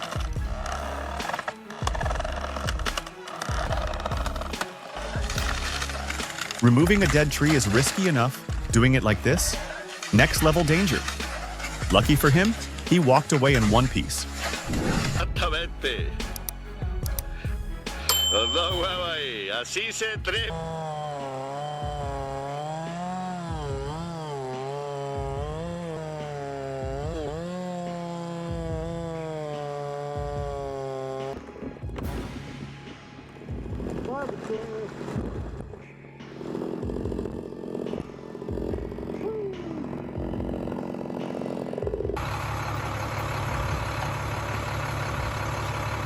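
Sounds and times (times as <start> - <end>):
chainsaw cutting wood: 0.0 - 15.4, 20.5 - 32.7, 33.5 - 44.7
heavy engine rumbling: 0.0 - 18.0, 40.5 - 46.0.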